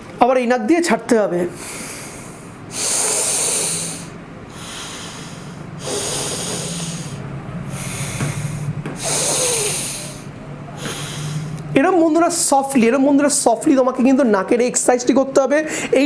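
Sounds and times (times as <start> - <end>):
forceful nasal breathing: 1.5 - 11.8.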